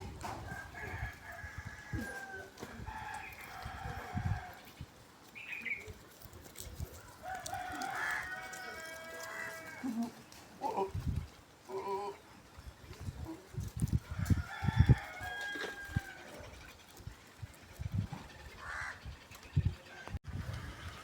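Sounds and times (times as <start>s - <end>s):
rooster crowing: 0.5s - 4.6s, 7.0s - 9.9s, 14.1s - 16.4s.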